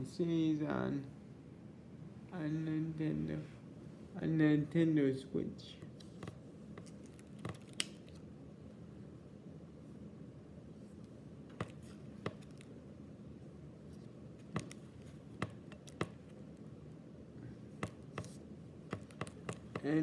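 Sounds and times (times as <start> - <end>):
faint steady hum: 0.0 - 20.0
cards clicking and tapping: 5.8 - 8.2, 11.5 - 12.8, 13.9 - 16.4, 17.7 - 20.0.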